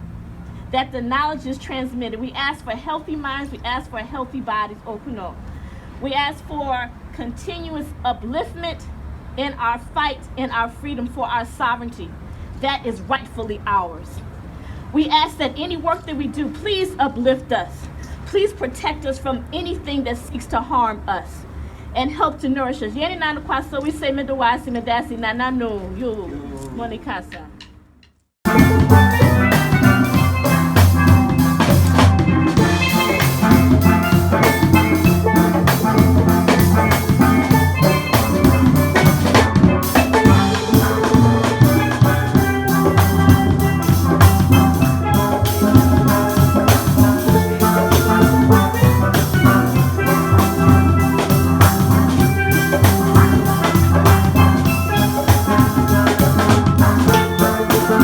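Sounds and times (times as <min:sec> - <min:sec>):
bright pitched melody: 0:28.4 - 0:58.0
drums with steady beat: 0:28.4 - 0:58.0.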